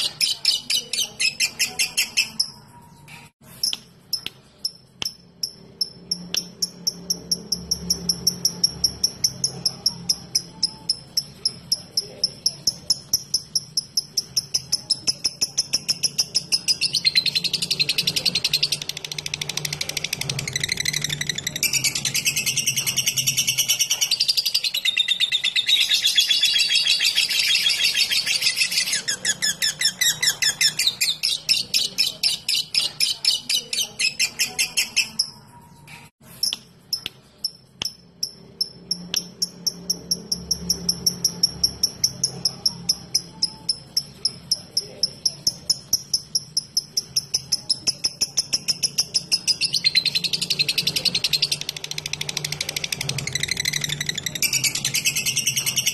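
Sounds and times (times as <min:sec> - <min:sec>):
bird chattering and chirping: 0:00.0 - 0:55.9.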